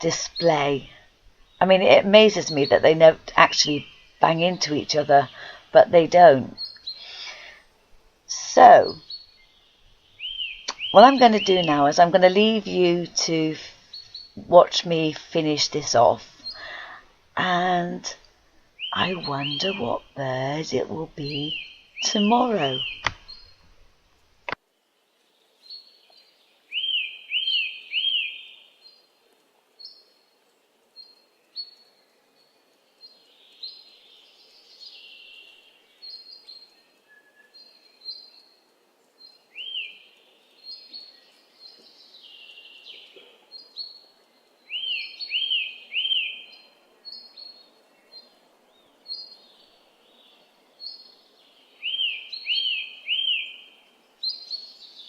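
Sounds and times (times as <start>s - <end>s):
faint steady hiss: 0.0s - 55.0s
songbirds chirping: 0.0s - 55.0s
whistled bird notes: 36.1s - 38.3s, 51.8s - 53.7s.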